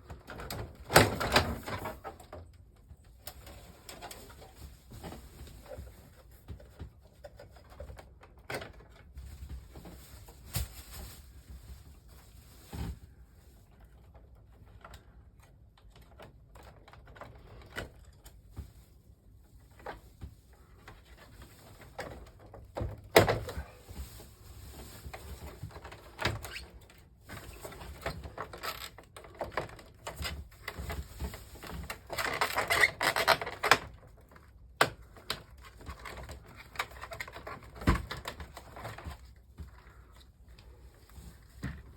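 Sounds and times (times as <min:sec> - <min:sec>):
plastic parts clicking and knocking: 0:05.8 - 0:09.2, 0:13.8 - 0:18.4, 0:27.8 - 0:31.0, 0:31.6 - 0:39.9.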